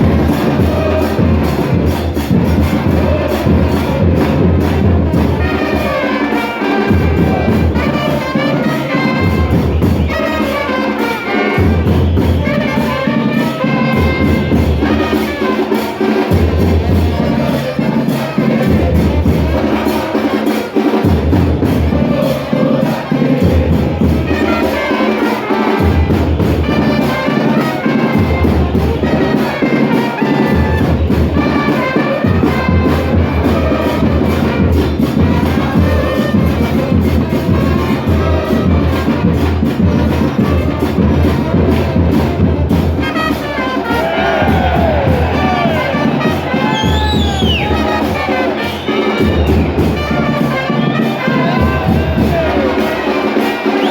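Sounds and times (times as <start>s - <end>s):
music with brass and percussion: 0.0s - 53.9s.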